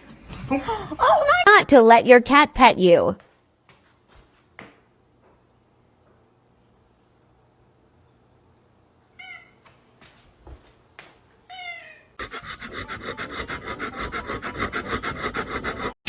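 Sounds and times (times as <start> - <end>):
cat meowing: 9.2 - 9.6, 11.5 - 12.2.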